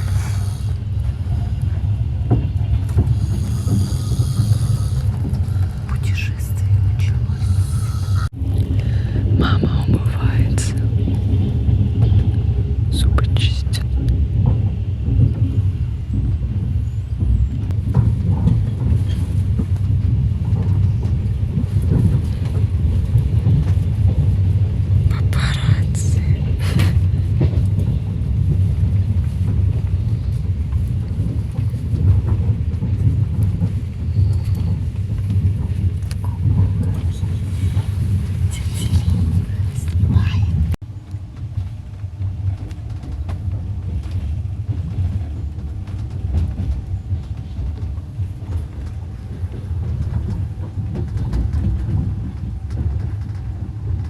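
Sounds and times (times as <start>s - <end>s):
train rumble inside carriage: 0.0s - 54.0s
faint clicks and rattles: 30.7s - 54.0s.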